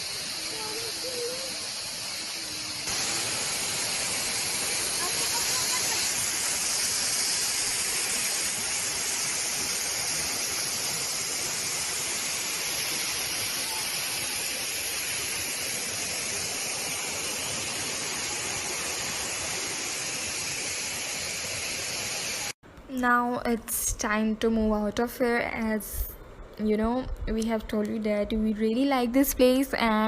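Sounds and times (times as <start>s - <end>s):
waterfall rushing: 0.0s - 22.6s.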